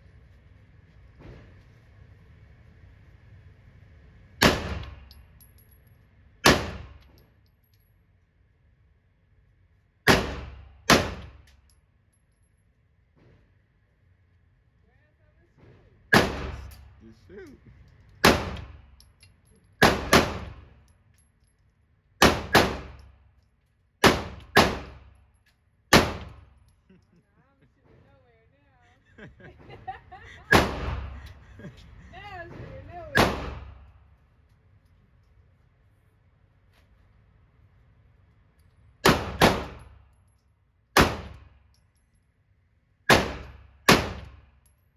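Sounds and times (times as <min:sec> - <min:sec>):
gunshots echoing: 0:04.4 - 0:05.0, 0:06.4 - 0:07.0, 0:10.1 - 0:11.4, 0:16.1 - 0:16.8, 0:18.2 - 0:18.8, 0:19.8 - 0:20.7, 0:22.2 - 0:23.0, 0:24.0 - 0:25.1, 0:25.9 - 0:26.5, 0:30.5 - 0:31.4, 0:33.2 - 0:33.9, 0:39.0 - 0:39.9, 0:41.0 - 0:41.5, 0:43.1 - 0:44.4.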